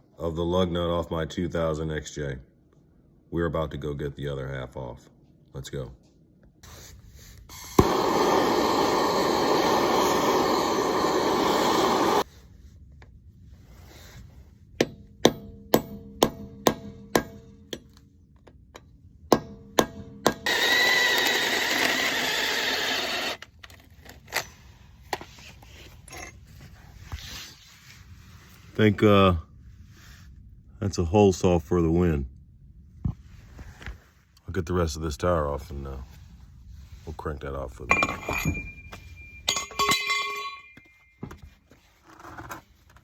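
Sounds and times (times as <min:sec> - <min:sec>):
power drill hole saw cutting metal: 0:07.6 - 0:12.2, 0:20.4 - 0:23.4
ringing metal knocks: 0:37.9 - 0:41.3.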